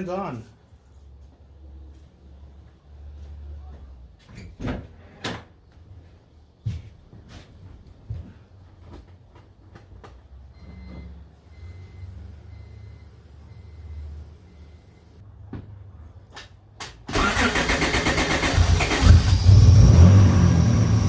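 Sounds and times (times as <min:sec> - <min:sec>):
faint pulsing beep: 0:10.5 - 0:15.2
car engine cranking and running: 0:17.1 - 0:21.0.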